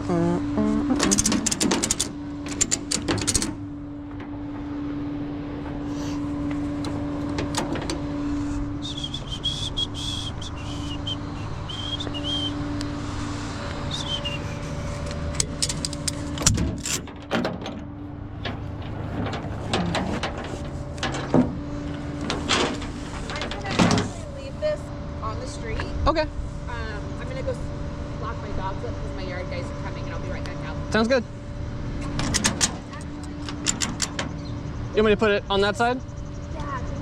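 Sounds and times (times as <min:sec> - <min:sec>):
vehicle engine humming: 0:00.0 - 0:37.0
wavering high whistle: 0:08.8 - 0:12.6, 0:13.9 - 0:14.7.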